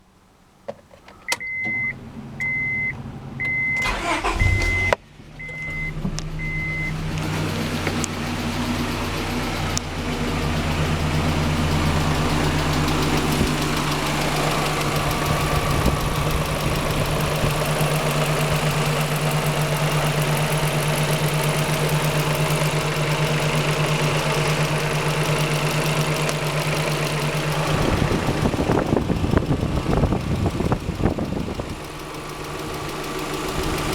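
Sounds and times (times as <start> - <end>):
car engine cranking and starting: 0.7 - 33.9
car warning chime beeping: 1.1 - 7.0
engine running with rapid knocking: 5.9 - 33.9.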